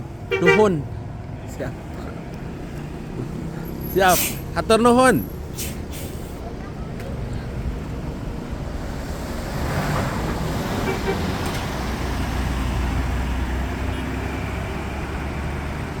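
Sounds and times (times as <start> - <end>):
bus engine rumbling: 0.0 - 16.0
road traffic noise: 0.0 - 16.0.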